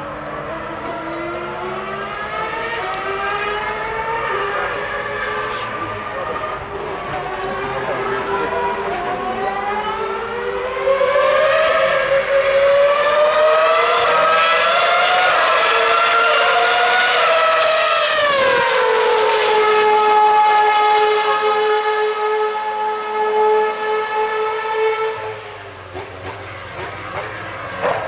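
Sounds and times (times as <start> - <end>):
race car engine passing by: 0.0 - 28.0.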